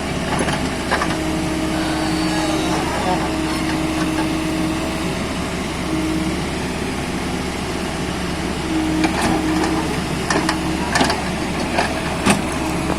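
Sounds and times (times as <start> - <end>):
diesel engine running: 0.0 - 12.9
tone: 0.7 - 6.7, 8.5 - 12.9.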